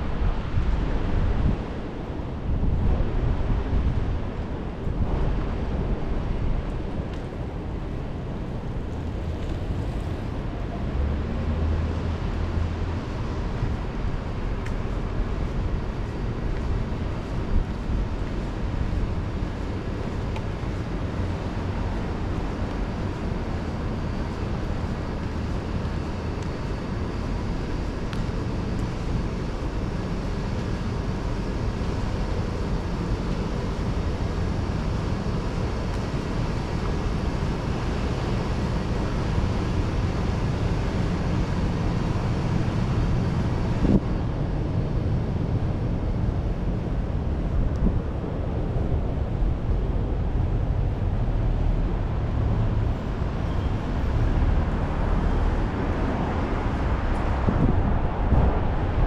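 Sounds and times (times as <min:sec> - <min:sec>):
passing traffic: 0:00.0 - 0:59.0
rain: 0:08.7 - 0:44.3, 0:46.7 - 0:59.0
wind buffeting microphone: 0:55.6 - 0:59.0.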